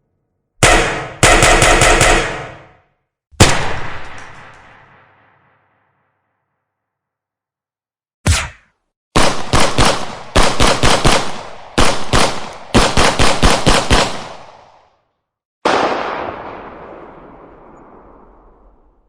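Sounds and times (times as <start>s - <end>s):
rapid handgun shots: 0.6s - 2.8s, 9.2s - 14.9s
echoing gunshot: 0.6s - 6.0s, 9.2s - 14.7s, 15.6s - 19.0s.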